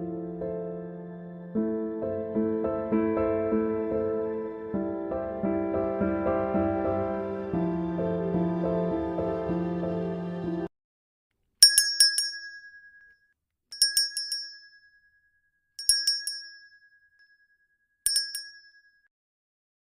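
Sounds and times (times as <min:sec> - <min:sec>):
small bell ringing: 0:11.6 - 0:19.1.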